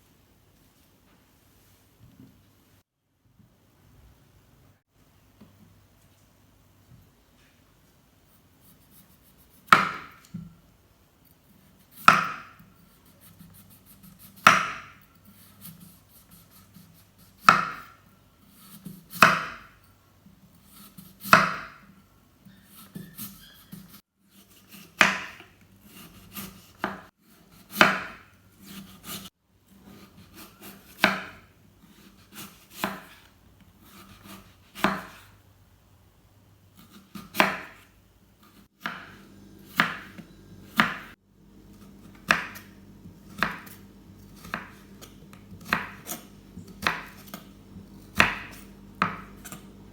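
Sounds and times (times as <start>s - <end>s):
knife slicing on cutting board: 29.9s - 35.3s, 36.8s - 49.8s.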